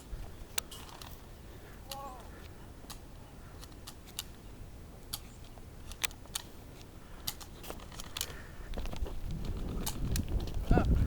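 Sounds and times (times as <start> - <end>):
toy blasters clicking and snapping: 5.9 - 6.6, 7.2 - 8.4, 9.2 - 10.6.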